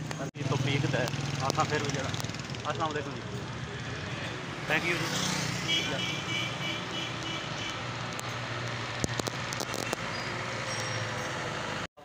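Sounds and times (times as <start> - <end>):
sharp clicks: 7.2 - 10.1.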